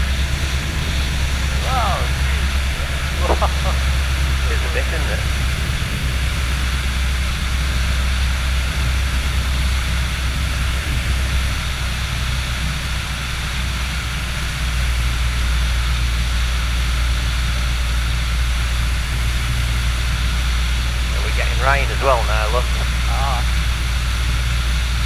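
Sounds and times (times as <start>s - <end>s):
propeller engine droning: 0.0s - 25.0s.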